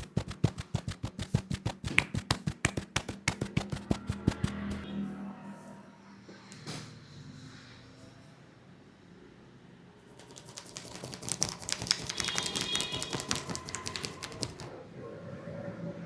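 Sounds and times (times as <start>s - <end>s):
hands tapping on a head: 0.0s - 4.8s, 10.2s - 14.7s.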